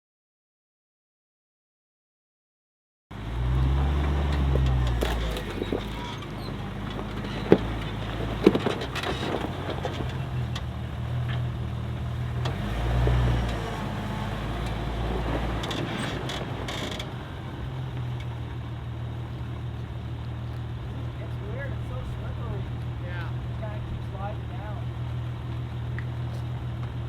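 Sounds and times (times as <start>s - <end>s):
engine running at low speed: 3.1s - 27.0s
sharp knocks: 4.1s - 10.3s.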